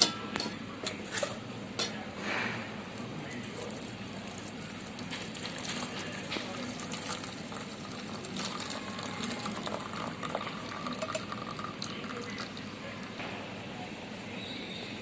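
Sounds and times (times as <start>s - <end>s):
kitchen utensils clinking: 0.0s - 2.6s
liquid pouring: 2.8s - 13.2s.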